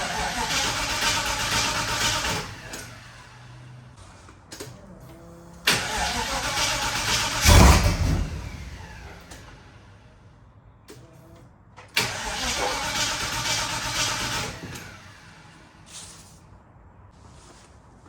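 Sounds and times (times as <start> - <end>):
starter motor cranking: 0.0 - 3.0, 5.6 - 9.6, 12.0 - 15.0
engine firing burst: 0.0 - 3.8, 5.6 - 10.0, 12.0 - 15.5.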